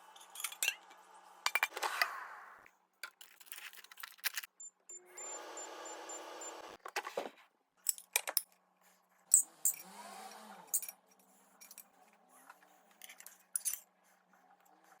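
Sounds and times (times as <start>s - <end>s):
small hard objects clinking: 3.0s - 4.5s.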